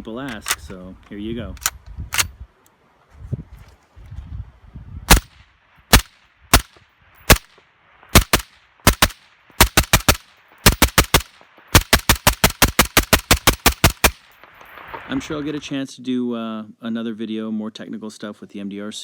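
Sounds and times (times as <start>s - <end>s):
rifle gunshots: 5.1s - 14.4s.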